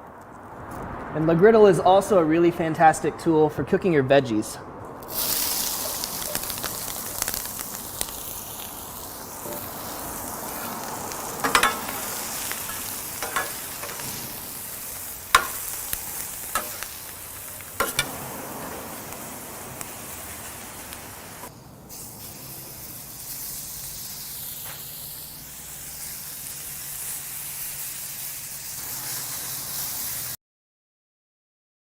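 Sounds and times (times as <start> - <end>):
vegetables sizzling on griddle: 5.0 - 30.4
spatula scraping steel: 9.4 - 19.1.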